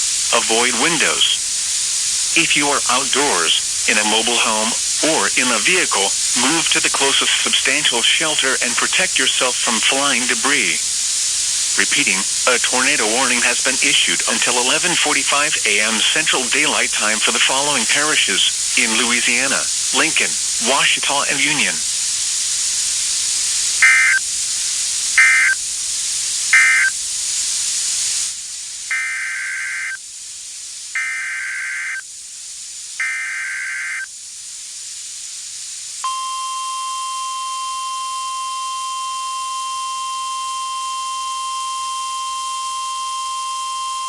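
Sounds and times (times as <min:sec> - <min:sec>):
steady warning alarm tone: 0:00.0 - 0:01.6, 0:02.3 - 0:21.9, 0:23.8 - 0:24.3, 0:25.1 - 0:25.6, 0:26.5 - 0:27.0, 0:28.9 - 0:30.0, 0:31.0 - 0:32.0, 0:33.0 - 0:34.1, 0:36.0 - 0:44.0
warbling data bursts: 0:00.0 - 0:01.6, 0:02.2 - 0:21.9, 0:23.8 - 0:24.3, 0:25.2 - 0:25.6, 0:26.5 - 0:27.0, 0:38.2 - 0:44.0
radio hiss: 0:00.0 - 0:44.0.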